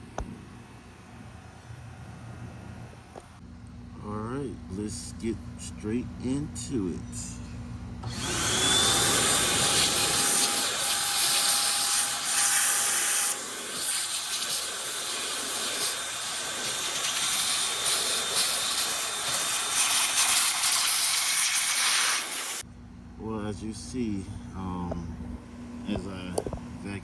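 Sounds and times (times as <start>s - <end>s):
vacuum cleaner running: 8.0s - 22.6s.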